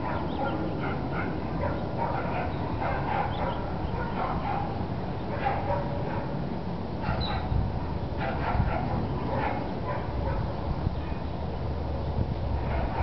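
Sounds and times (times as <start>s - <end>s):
dog yipping and whining: 7.1s - 7.5s.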